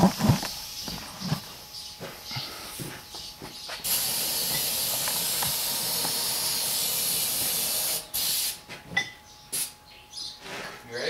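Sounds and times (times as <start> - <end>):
compressed air hissing into tire: 3.8 - 8.6, 9.6 - 9.8.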